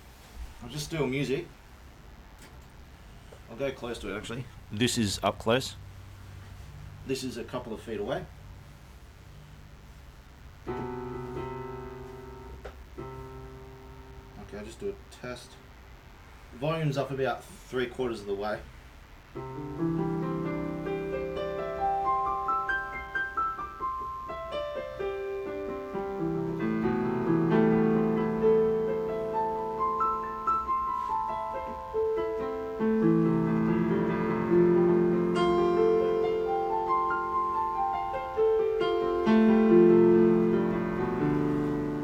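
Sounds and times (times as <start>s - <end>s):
electronic keyboard piano chords: 10.6s - 14.6s, 19.4s - 42.0s.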